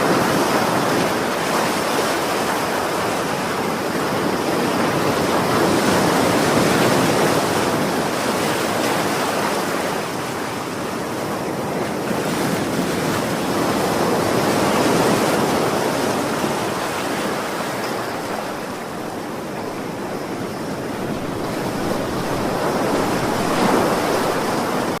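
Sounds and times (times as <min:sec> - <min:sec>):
ocean waves washing: 0:00.0 - 0:25.0.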